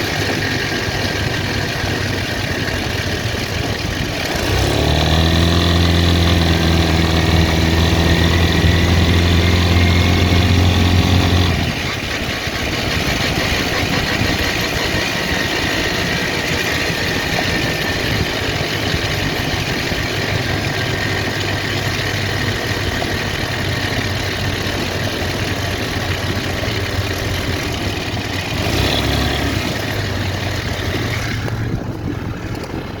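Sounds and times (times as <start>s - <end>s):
engine idling: 0.0s - 33.0s.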